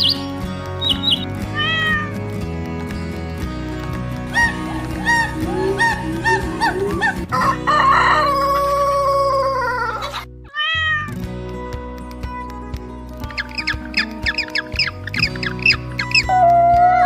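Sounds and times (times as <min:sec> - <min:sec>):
background music: 0:00.0 - 0:17.0
rooster crowing: 0:07.0 - 0:10.1.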